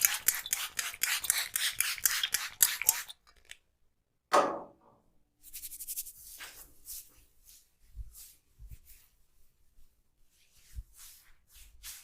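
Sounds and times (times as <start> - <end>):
hands rubbing hair and skin: 5.4 - 9.2, 10.3 - 12.0.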